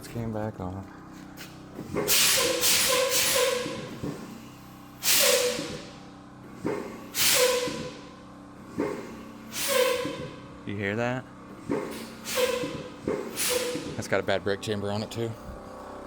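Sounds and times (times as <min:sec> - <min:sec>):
air brake hissing: 0:01.9 - 0:06.0, 0:06.6 - 0:08.1, 0:08.7 - 0:10.4, 0:11.7 - 0:14.0.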